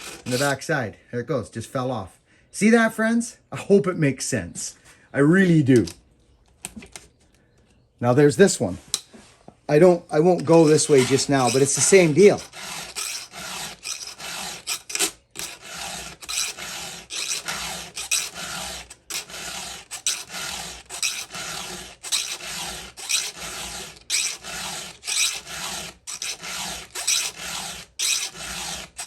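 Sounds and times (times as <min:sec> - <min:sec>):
file rasping on chain teeth: 0:00.0 - 0:00.6, 0:10.4 - 0:29.0.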